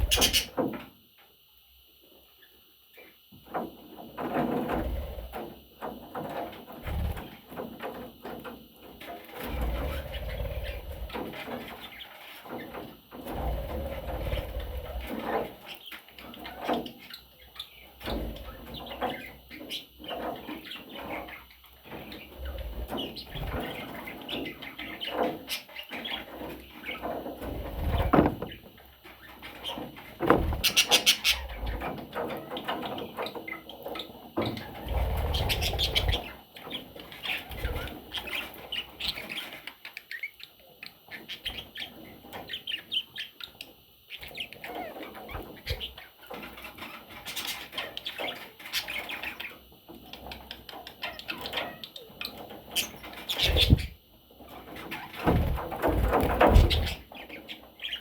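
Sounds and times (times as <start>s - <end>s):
budgerigars chirping: 0.0s - 0.6s, 30.4s - 40.5s, 51.0s - 53.9s, 56.2s - 58.0s.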